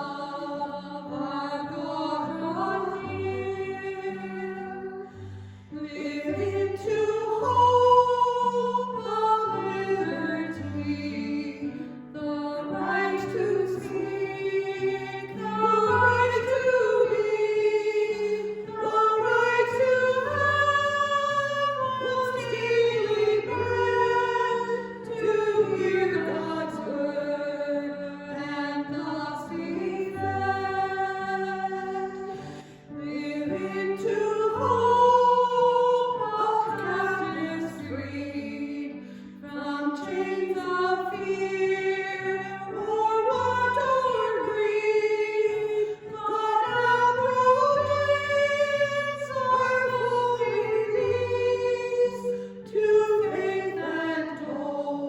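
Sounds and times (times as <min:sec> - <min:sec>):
voices singing a hymn: 0:00.0 - 0:55.0.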